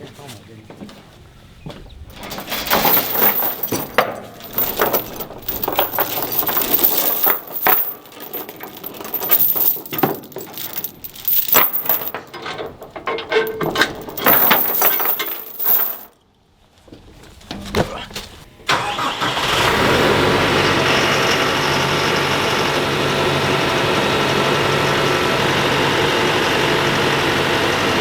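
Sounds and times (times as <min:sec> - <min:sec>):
chain clinking and rattling: 0:02.1 - 0:16.1.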